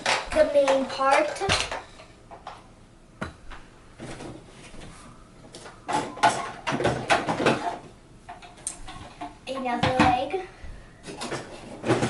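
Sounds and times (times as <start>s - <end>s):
plastic toy parts rustling and knocking: 0.0s - 2.6s, 5.5s - 10.3s, 11.1s - 12.0s
plastic clatter and scraping: 4.0s - 4.8s, 5.5s - 10.1s, 11.1s - 12.0s.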